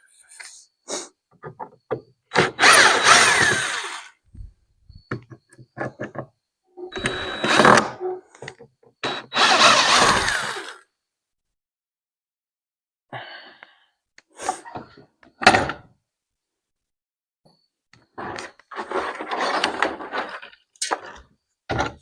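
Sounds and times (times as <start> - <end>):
rustling and scraping: 18.1 - 21.3.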